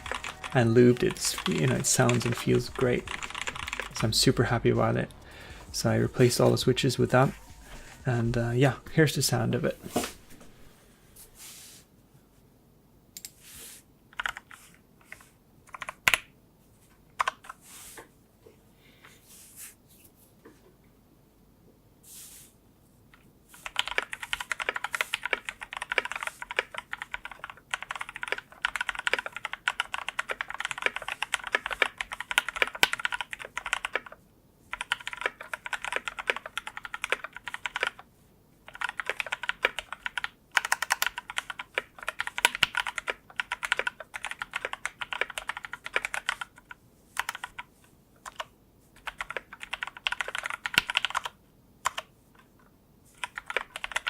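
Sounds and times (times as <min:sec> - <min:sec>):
mechanical keyboard typing: 0:00.0 - 0:04.2, 0:14.1 - 0:16.3, 0:23.6 - 0:52.1, 0:53.2 - 0:54.0.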